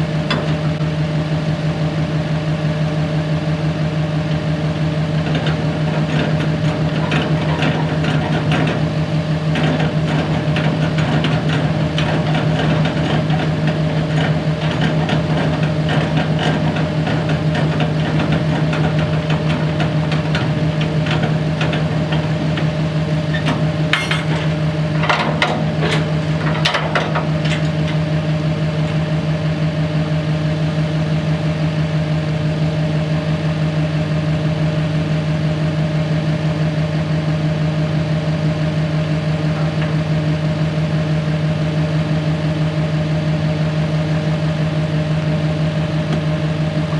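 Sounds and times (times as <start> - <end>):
engine running steadily: 0.0 - 46.9
knocks and rattles: 23.3 - 28.1
sharp metal clanks: 23.9 - 28.0.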